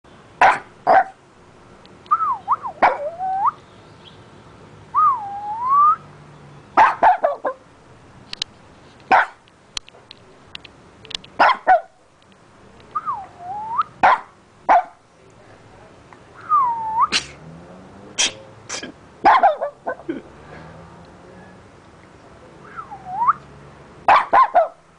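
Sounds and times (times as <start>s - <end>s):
dog whining: 2.6s - 3.5s
dog sneezing: 17.1s - 17.4s, 18.2s - 19.0s.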